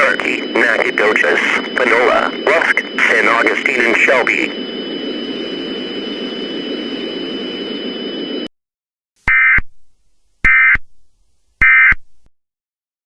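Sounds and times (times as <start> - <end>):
warbling digital data bursts: 0.0 - 4.6.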